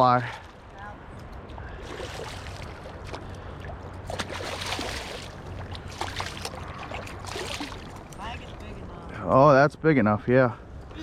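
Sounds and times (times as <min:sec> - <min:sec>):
water sloshing and splashing: 0:00.0 - 0:08.6.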